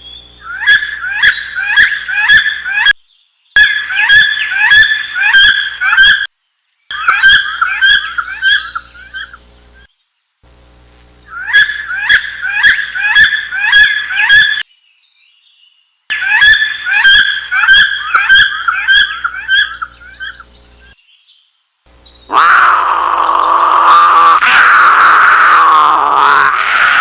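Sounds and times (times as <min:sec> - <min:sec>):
bird chirping: 0:00.0 - 0:10.7, 0:11.3 - 0:23.2
loud animal sound: 0:06.9 - 0:09.4, 0:11.3 - 0:14.6, 0:16.1 - 0:20.5, 0:22.2 - 0:27.0.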